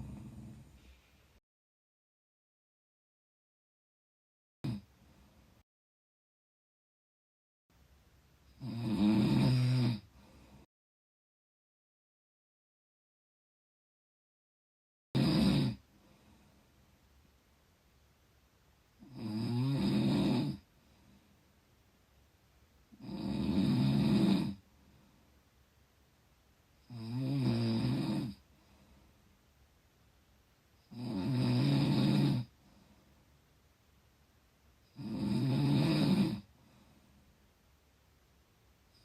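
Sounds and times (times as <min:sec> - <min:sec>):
person snoring: 0:00.0 - 0:00.8, 0:04.6 - 0:04.9, 0:08.5 - 0:10.6, 0:15.2 - 0:15.8, 0:19.0 - 0:20.7, 0:23.0 - 0:24.6, 0:26.8 - 0:28.4, 0:30.9 - 0:32.5, 0:34.9 - 0:36.5
quiet breathing: 0:00.0 - 0:01.4, 0:04.7 - 0:05.6, 0:10.0 - 0:10.7, 0:15.8 - 0:18.2, 0:20.4 - 0:23.0, 0:24.0 - 0:26.1, 0:28.2 - 0:29.8, 0:32.0 - 0:34.0, 0:36.4 - 0:39.0.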